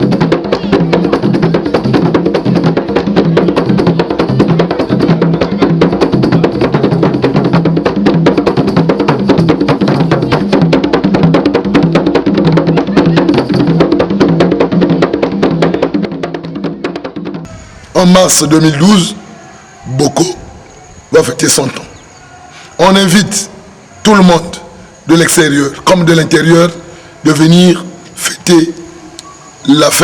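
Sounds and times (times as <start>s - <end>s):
percussion music with drums: 0.0s - 19.4s.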